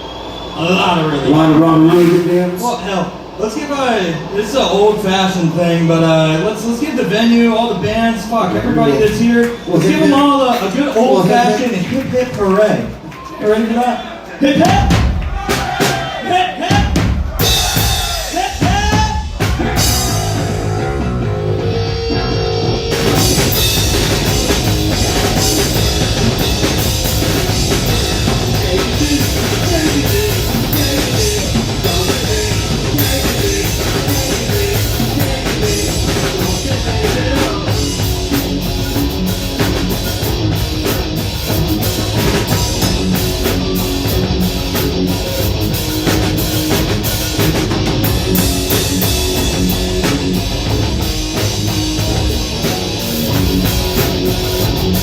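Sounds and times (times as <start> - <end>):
drum kit: 14.6 - 55.0
live rock band playing: 16.7 - 55.0
electric guitar: 19.7 - 55.0.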